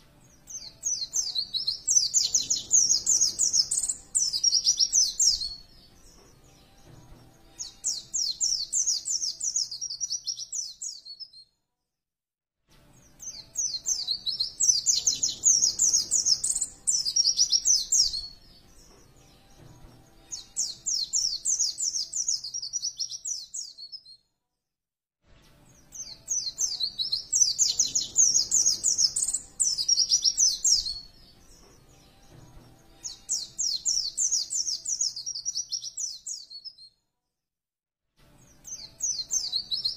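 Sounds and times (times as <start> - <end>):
bird singing high chattering notes: 0.5 - 6.4, 7.6 - 11.4, 13.2 - 18.8, 20.3 - 24.2, 25.9 - 31.4, 33.0 - 36.9, 38.6 - 39.9.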